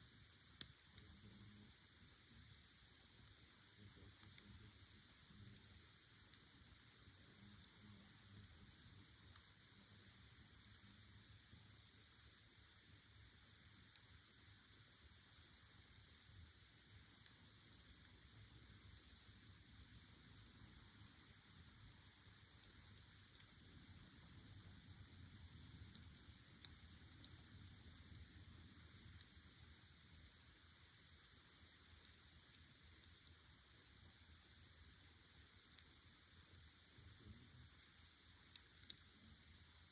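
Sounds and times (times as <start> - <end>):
crickets chirping: 0.0 - 39.9
faint clicks: 4.1 - 4.6, 38.5 - 39.1.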